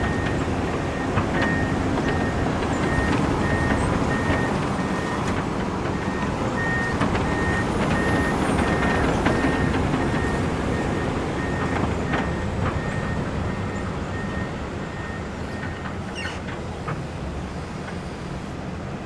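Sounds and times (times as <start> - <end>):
travel alarm beeping: 0.0 - 15.8
diesel engine rumbling: 0.0 - 19.0.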